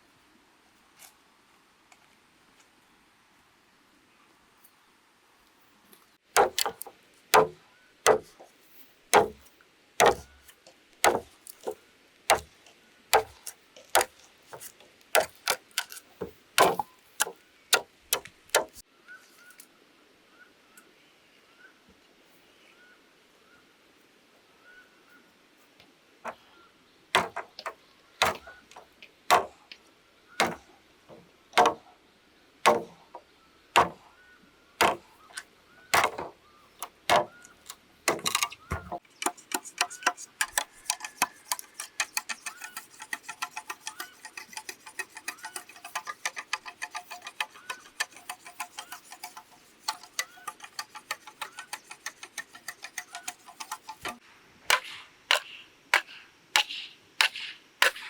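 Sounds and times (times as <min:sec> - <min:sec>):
hand tool striking bamboo: 0:06.4 - 0:08.5, 0:09.1 - 0:12.5, 0:13.1 - 0:18.8, 0:27.2 - 0:29.6, 0:30.4 - 0:30.6, 0:31.6 - 0:31.8, 0:32.6 - 0:33.2, 0:33.8 - 0:34.0, 0:34.8 - 0:37.5, 0:38.1 - 0:58.0
light taps on bamboo: 0:06.4 - 0:08.5, 0:09.1 - 0:12.5, 0:13.2 - 0:18.8, 0:27.2 - 0:29.8, 0:30.4 - 0:30.6, 0:31.6 - 0:31.8, 0:32.7 - 0:33.2, 0:33.8 - 0:34.0, 0:34.8 - 0:35.4, 0:36.0 - 0:58.0.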